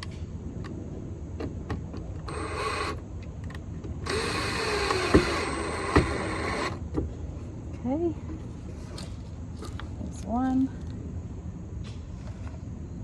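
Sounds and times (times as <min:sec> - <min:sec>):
power drill driving a screw: 0:02.3 - 0:03.0, 0:04.0 - 0:06.8.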